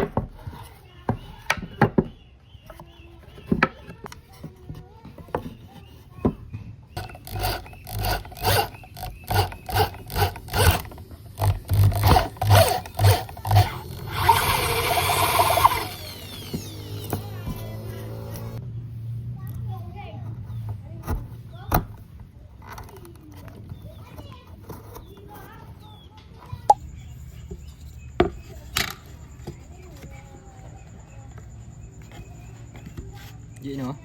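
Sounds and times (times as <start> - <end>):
rasping strokes: 7.0 - 18.6
small power tool whirring: 7.0 - 18.6.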